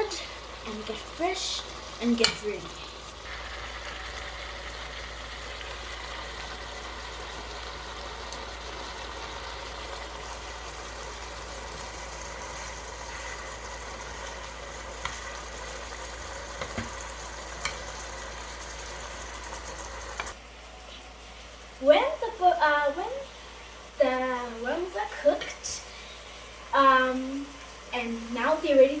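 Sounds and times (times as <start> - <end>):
food sizzling in a pot: 0.0 - 29.0.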